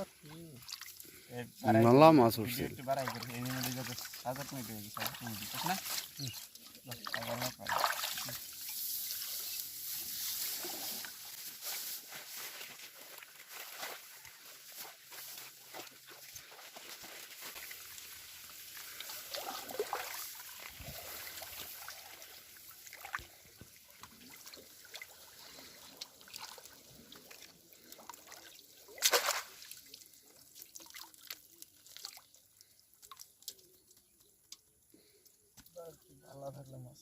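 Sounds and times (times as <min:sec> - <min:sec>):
small water splashes: 0:00.0 - 0:01.3, 0:02.6 - 0:11.3, 0:15.7 - 0:34.0
water trickling and sloshing: 0:00.0 - 0:11.5, 0:12.5 - 0:34.5.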